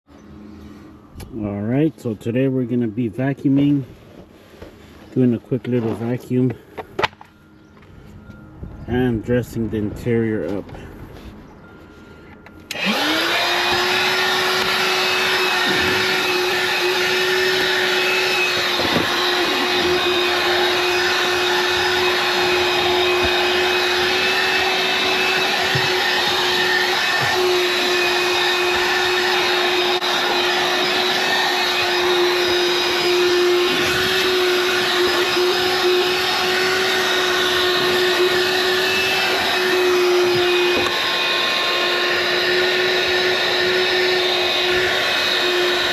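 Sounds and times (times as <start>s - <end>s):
portable vacuum running: 12.6s - 45.9s.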